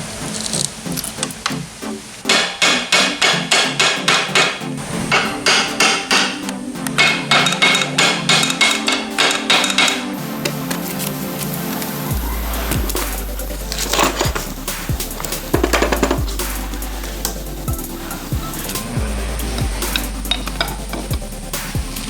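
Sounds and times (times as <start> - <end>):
hammer striking metal: 2.3 - 10.1.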